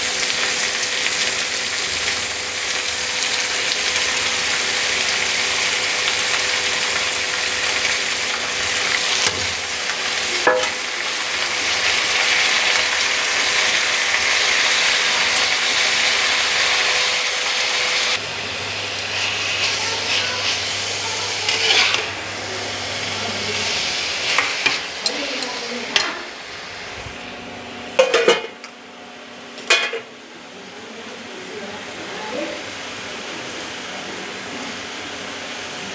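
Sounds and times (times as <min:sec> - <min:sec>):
food sizzling in frying pan: 0:00.0 - 0:27.2
spatula scraping and knocking pan: 0:10.5 - 0:10.8, 0:21.3 - 0:22.2.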